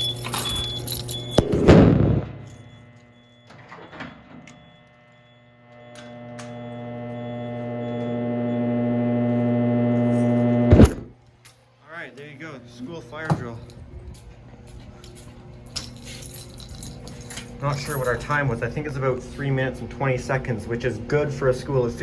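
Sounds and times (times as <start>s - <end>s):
steady hum: 0.0s - 22.0s.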